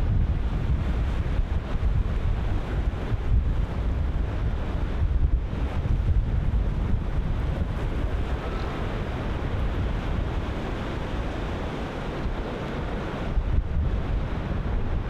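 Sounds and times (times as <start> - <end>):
wind buffeting microphone: 0.0 - 15.0
ocean surf breaking: 6.8 - 15.0.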